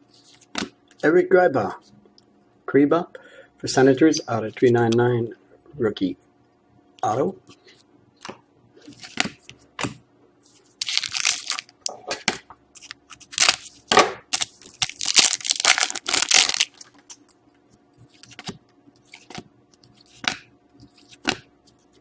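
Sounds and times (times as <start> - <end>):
card pack wrapping crinkling: 10.8 - 11.9, 12.8 - 17.2.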